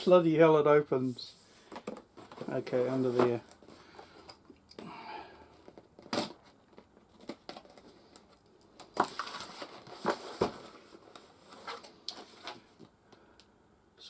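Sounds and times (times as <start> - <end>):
cardboard rustling: 1.5 - 4.0, 8.8 - 12.8.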